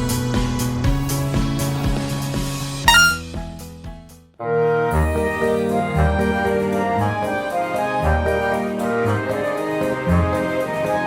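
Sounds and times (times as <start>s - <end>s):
instrumental background music: 2.9s - 3.3s.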